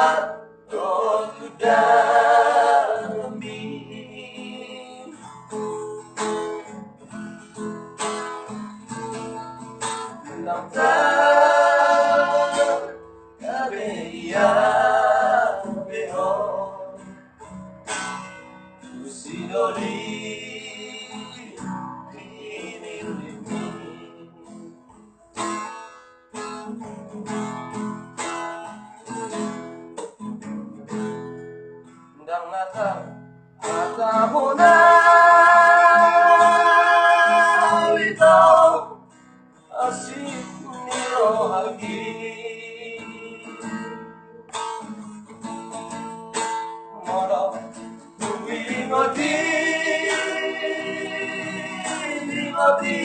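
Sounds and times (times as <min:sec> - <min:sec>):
person singing: 0:00.0 - 0:05.2, 0:10.3 - 0:17.0, 0:33.7 - 0:39.0, 0:39.7 - 0:43.8, 0:48.2 - 0:53.0
acoustic guitar strumming and plucking: 0:00.0 - 0:53.0.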